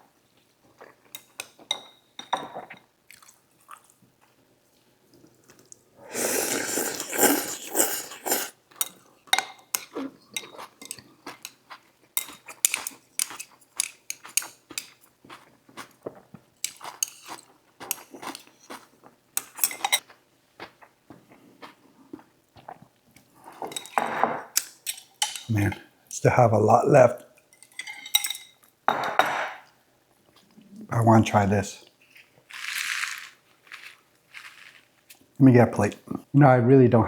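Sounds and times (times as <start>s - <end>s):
utensils clinking against dishes: 12.2s - 15.0s, 16.6s - 18.7s, 19.4s - 20.0s, 23.7s - 25.8s, 27.5s - 29.6s.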